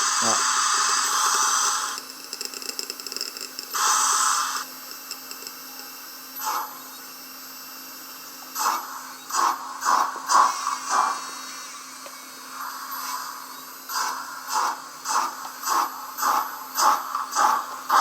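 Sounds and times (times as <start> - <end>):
steam hiss: 0.0 - 2.0, 3.8 - 4.7, 6.4 - 6.8, 8.6 - 11.8, 12.5 - 18.0.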